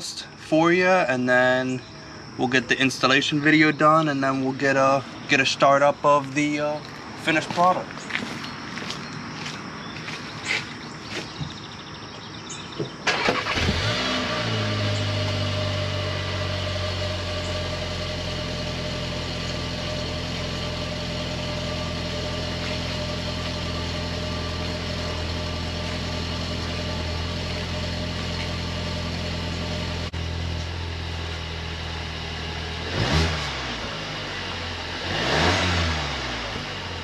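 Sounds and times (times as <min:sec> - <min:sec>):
starter motor cranking: 0:13.0 - 0:14.4
car engine revving and idling: 0:13.1 - 0:37.0.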